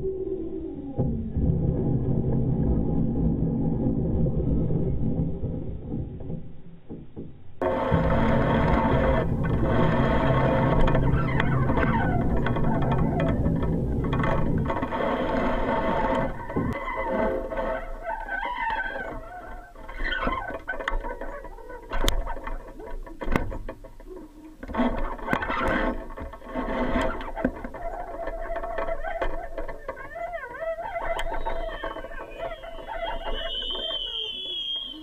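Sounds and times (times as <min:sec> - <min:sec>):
distorted electric guitar: 0:07.6 - 0:19.3.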